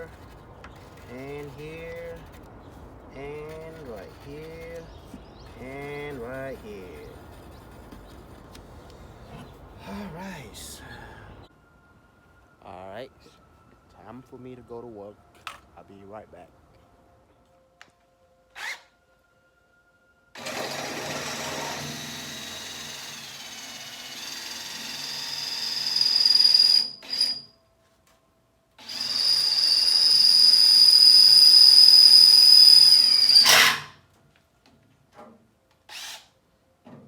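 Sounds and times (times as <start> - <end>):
power drill whining through metal: 20.4 - 27.5, 28.8 - 33.9, 35.9 - 36.3.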